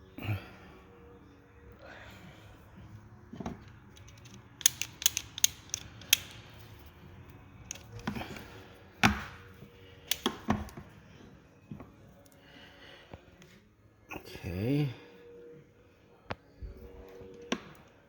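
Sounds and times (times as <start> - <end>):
parts snapping and knocking: 3.4 - 6.5, 7.7 - 9.4, 10.1 - 10.9
hand tools clicking: 4.0 - 6.4.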